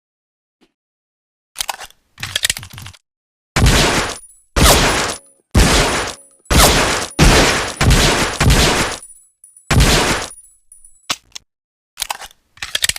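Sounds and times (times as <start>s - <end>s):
pistol firing single shots: 3.6s - 9.0s, 9.7s - 10.3s.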